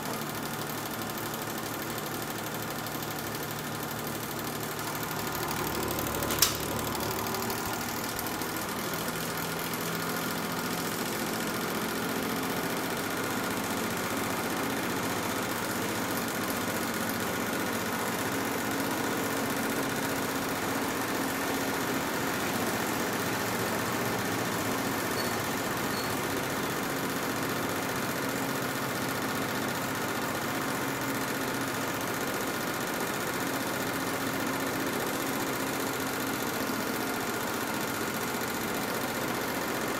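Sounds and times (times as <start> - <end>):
box fan running: 0.0 - 39.9
sharp click: 6.1 - 6.8.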